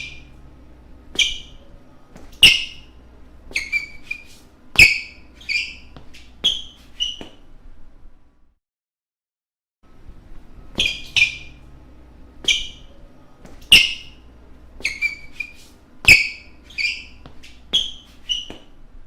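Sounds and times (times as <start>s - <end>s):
low background rumble: 0.0s - 3.5s
shoes squeaking on court floor: 0.0s - 7.5s, 10.6s - 11.8s, 12.4s - 18.8s.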